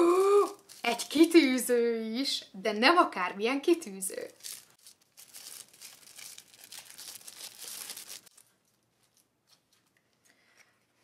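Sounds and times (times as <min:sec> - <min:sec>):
packaging rustling and crinkling: 0:00.4 - 0:01.3, 0:04.3 - 0:09.8.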